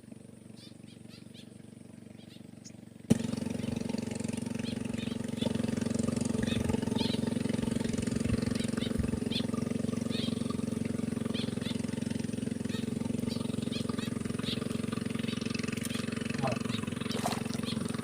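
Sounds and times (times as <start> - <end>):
small engine running: 0.0 - 18.0
faint high bird chirps: 0.5 - 1.6, 2.2 - 2.8, 8.5 - 10.5, 12.6 - 18.0.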